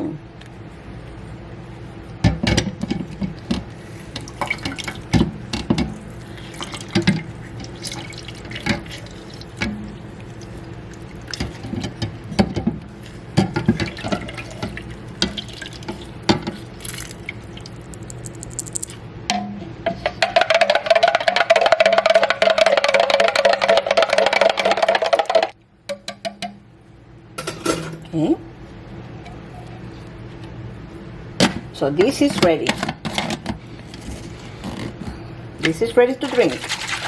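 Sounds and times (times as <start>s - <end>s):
juice dripping into a glass: 14.3s - 19.0s.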